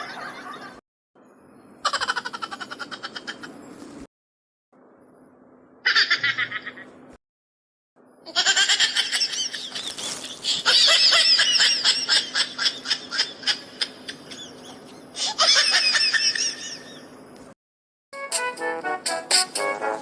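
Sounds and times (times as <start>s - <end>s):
high-pitched cackling laugh: 0.0s - 0.8s, 1.8s - 3.6s, 5.8s - 7.0s, 8.3s - 17.1s.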